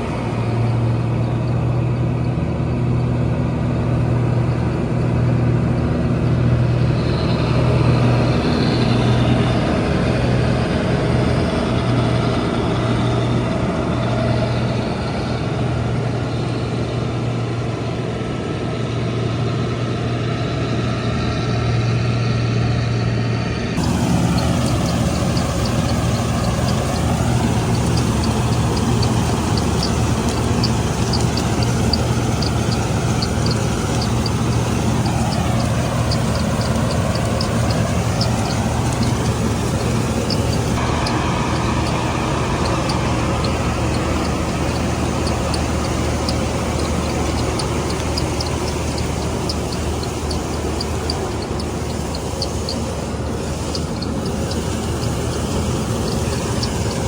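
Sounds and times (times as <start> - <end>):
diesel engine humming: 0.0 - 57.0
fast high ticking: 3.8 - 15.2, 23.8 - 57.0.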